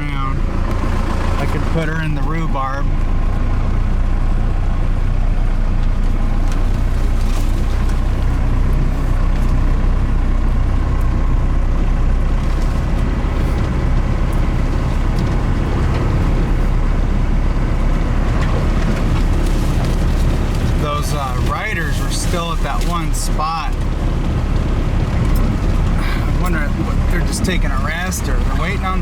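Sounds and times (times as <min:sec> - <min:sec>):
diesel engine running: 0:00.0 - 0:29.0.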